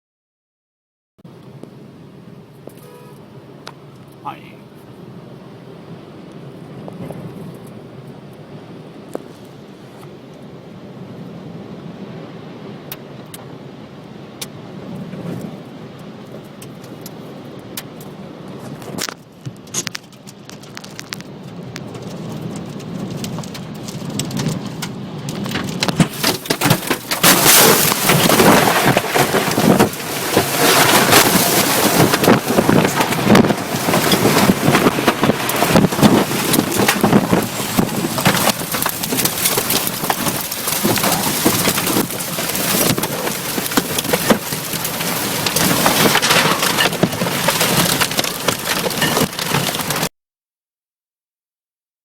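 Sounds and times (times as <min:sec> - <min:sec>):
tornado winds: 0:01.3 - 0:50.1
sharp knocks and cracks: 0:18.9 - 0:50.1
heavy rain: 0:20.4 - 0:50.1.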